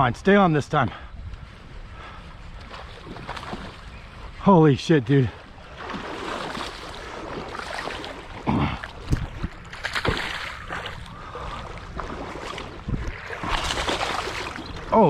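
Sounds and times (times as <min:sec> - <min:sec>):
creek water running: 0:00.3 - 0:15.0
sudden water splashes: 0:05.6 - 0:15.0
wind on microphone: 0:08.9 - 0:14.9.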